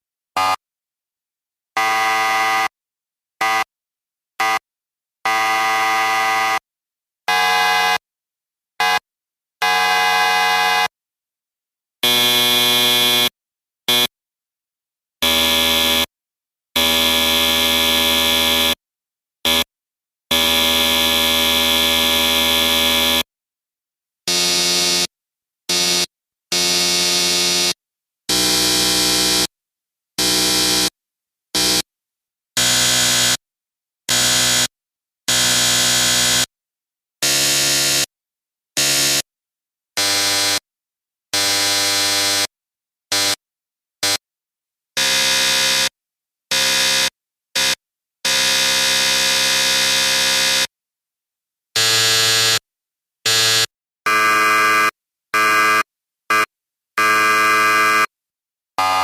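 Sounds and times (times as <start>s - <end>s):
electric buzzers buzzing: 12.0s - 14.1s, 24.3s - 25.1s, 25.7s - 29.5s, 30.2s - 30.9s, 31.6s - 31.8s, 32.6s - 33.4s, 34.1s - 34.7s, 35.3s - 36.5s, 45.0s - 50.7s, 58.8s - 59.0s.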